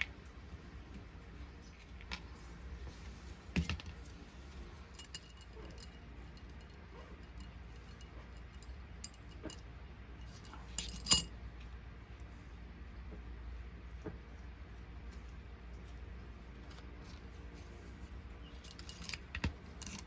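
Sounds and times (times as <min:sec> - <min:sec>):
metal toy parts clinking: 0:04.8 - 0:11.3, 0:18.5 - 0:20.0.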